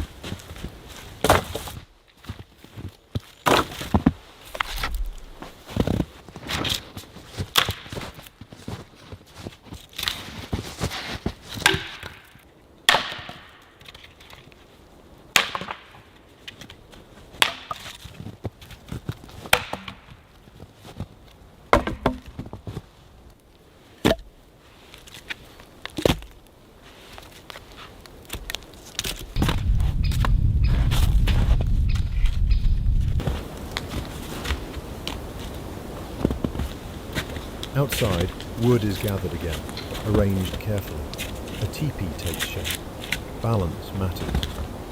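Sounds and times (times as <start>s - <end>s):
axe strikes chopping wood: 11.6s - 12.2s, 12.9s - 13.5s, 15.4s - 15.9s, 17.4s - 17.8s, 19.5s - 20.1s, 21.7s - 22.2s.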